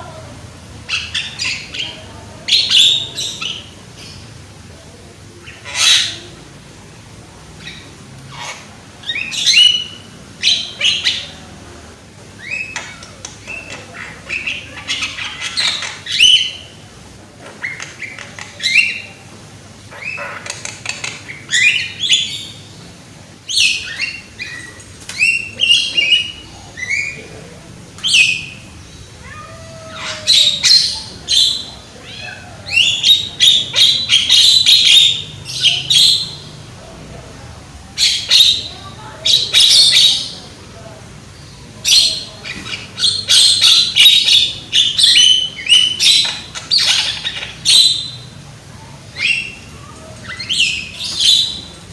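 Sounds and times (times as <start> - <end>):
myna bird singing loudly: 41.4 - 48.4, 49.2 - 51.7.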